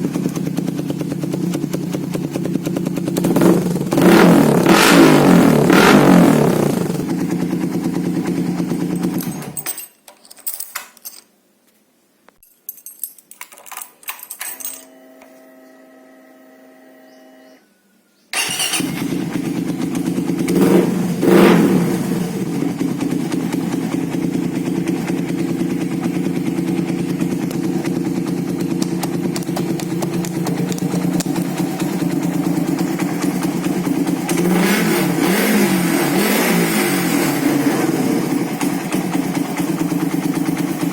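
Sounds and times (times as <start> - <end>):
motorcycle engine idling and revving: 0.0 - 9.6, 18.4 - 40.9.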